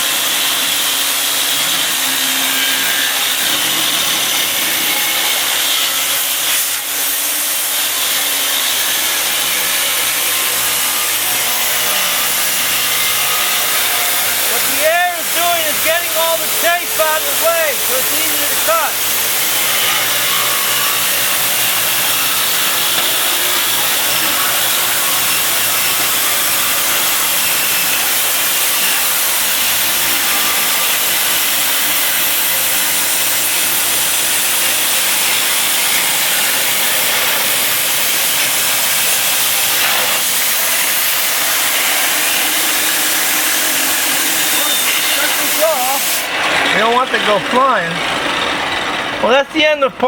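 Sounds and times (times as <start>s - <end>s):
power saw running: 0.0s - 50.0s
blown air hissing: 14.4s - 19.7s.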